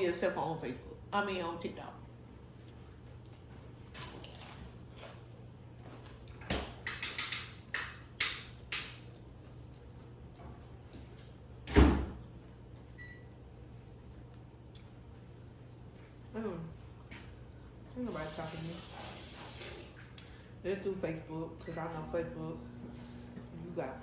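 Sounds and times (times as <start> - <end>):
steady low hum: 0.0 - 18.7, 19.4 - 24.0.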